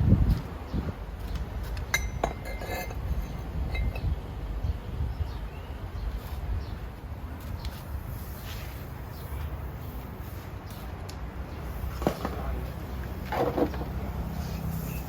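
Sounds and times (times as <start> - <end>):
steady low rumble: 0.0 - 8.3
metallic clinks: 1.9 - 4.1.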